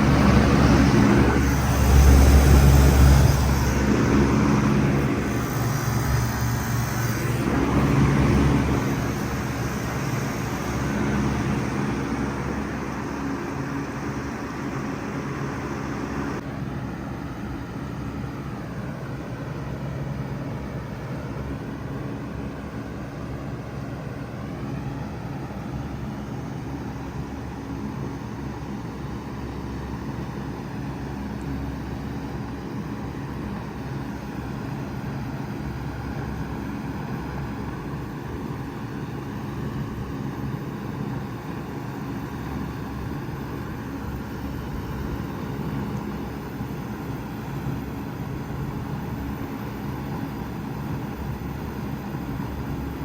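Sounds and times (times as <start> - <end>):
compressor humming: 0.0 - 16.6, 30.8 - 53.0
fan rushing: 0.0 - 53.0.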